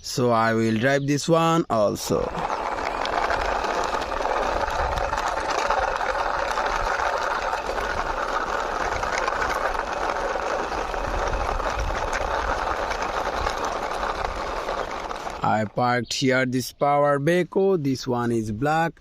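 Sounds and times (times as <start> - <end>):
toy wheels rolling and rattling: 0.0 - 16.4.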